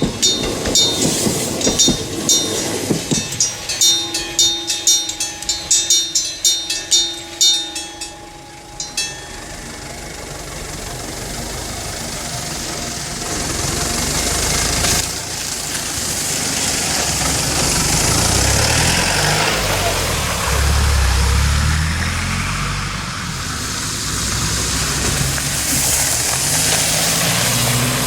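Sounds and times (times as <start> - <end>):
level-crossing warning bell ringing: 0.0 - 21.4
vehicle noise: 0.0 - 28.0.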